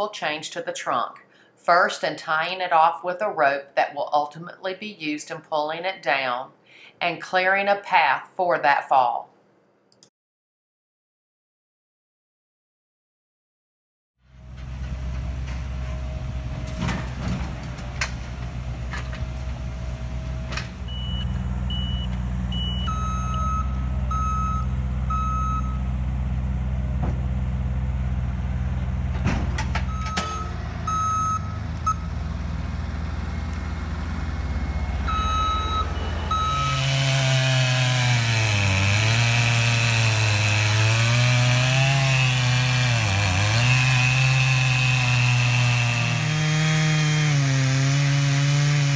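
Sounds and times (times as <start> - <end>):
truck engine running: 14.3 - 39.9
reversing alarm beeping: 20.2 - 26.0, 29.8 - 32.3, 32.9 - 38.5
chainsaw cutting wood: 33.8 - 48.9.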